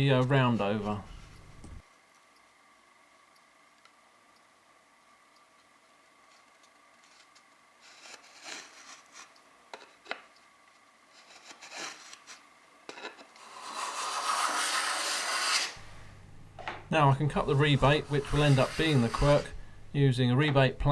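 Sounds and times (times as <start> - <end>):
steady scraping on wood: 0.0 - 1.8, 13.3 - 16.0, 17.3 - 19.7
small knocks: 0.9 - 1.8
hand tool scratching wood: 13.4 - 15.9, 17.3 - 19.6.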